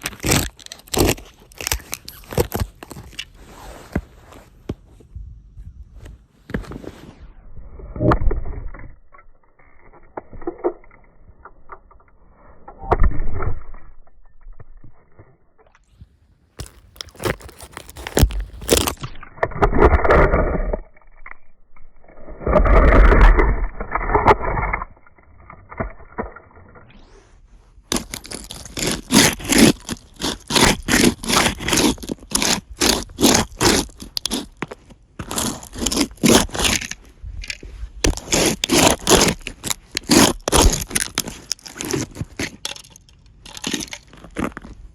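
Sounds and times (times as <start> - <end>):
shoes grinding toy cars on asphalt: 0.0 - 4.5, 16.6 - 19.1, 27.0 - 44.9.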